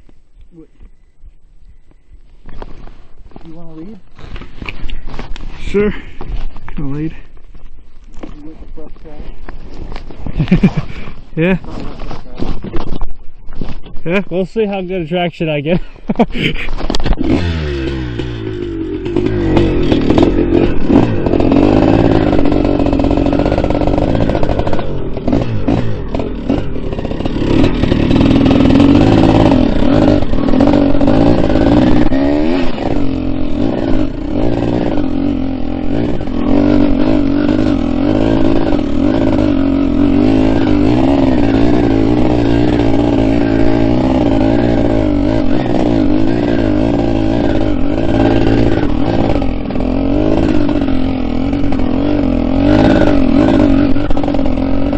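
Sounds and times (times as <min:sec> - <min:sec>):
dirt bike engine revving: 0:09.7 - 0:11.9, 0:14.4 - 0:54.9.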